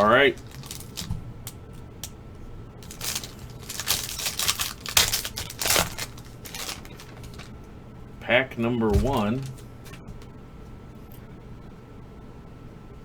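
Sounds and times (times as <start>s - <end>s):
packaging crinkling and tearing: 0.0s - 2.2s, 2.8s - 7.6s, 8.9s - 9.8s.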